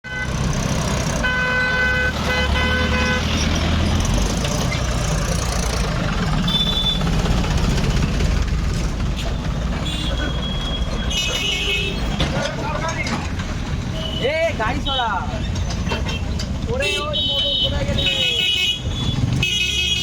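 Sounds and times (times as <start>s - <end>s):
low rumble of vehicle engines: 0.1s - 20.0s.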